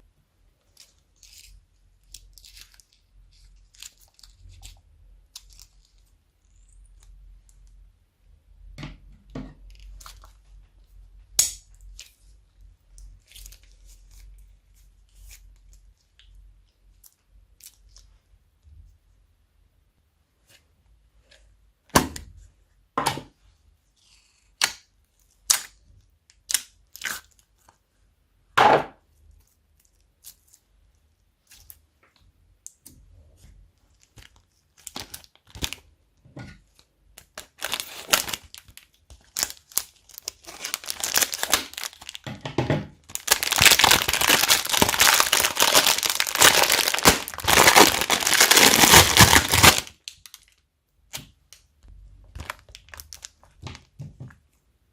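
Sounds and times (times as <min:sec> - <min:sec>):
slime crackling: 0:37.2 - 0:42.3, 0:43.1 - 0:50.5
slime popping: 0:43.1 - 0:49.9.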